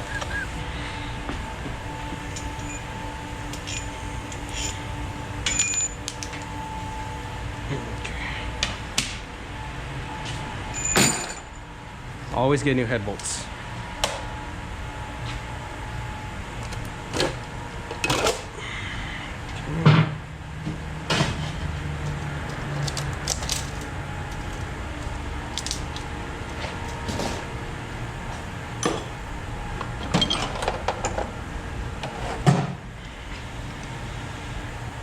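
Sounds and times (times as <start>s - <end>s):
metal parts and tools clinking: 2.3s - 6.2s.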